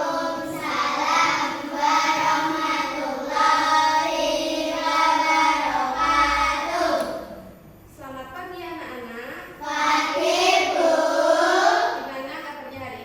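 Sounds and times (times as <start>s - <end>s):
children singing: 0.0s - 7.4s, 9.6s - 12.0s.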